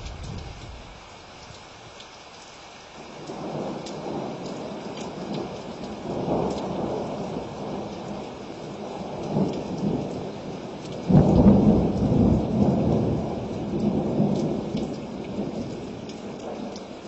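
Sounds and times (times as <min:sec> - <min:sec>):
thunder rumbling: 0:00.0 - 0:02.0, 0:11.0 - 0:16.8
steady rain with drop ticks: 0:00.0 - 0:17.0.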